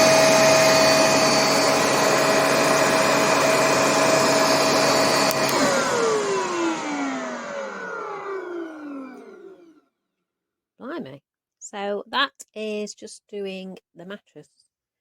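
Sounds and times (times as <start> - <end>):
vacuum cleaner whining: 0.0 - 9.8.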